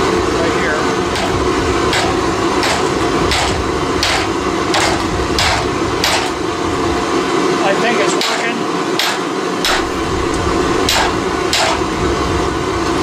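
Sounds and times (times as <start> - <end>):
steady hum: 0.0 - 13.0
hammer striking steel: 1.1 - 6.4, 8.1 - 10.1, 10.8 - 12.0.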